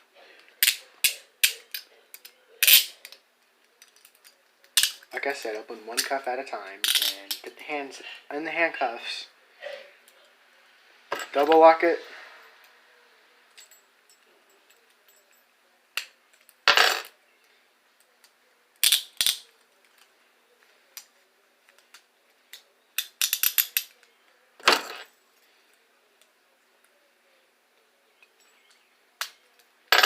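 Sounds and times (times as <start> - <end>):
metal handcuffs clicking: 0.6 - 3.2, 3.8 - 5.2, 6.8 - 7.4, 18.8 - 20.1, 22.5 - 24.0.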